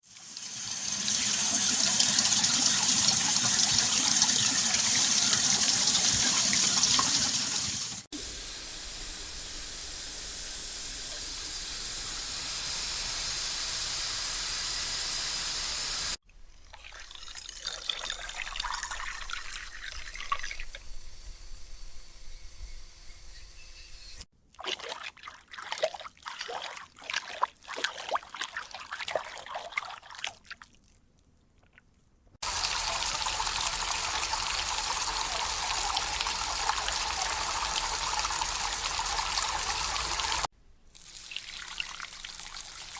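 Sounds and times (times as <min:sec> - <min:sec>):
tap water gushing: 0:00.1 - 0:22.2, 0:32.4 - 0:42.9
hissing rush of water: 0:06.1 - 0:16.2, 0:32.4 - 0:40.5
water trickling: 0:16.3 - 0:20.9
water drips and splashes: 0:16.5 - 0:20.9, 0:24.6 - 0:31.0, 0:32.4 - 0:42.9.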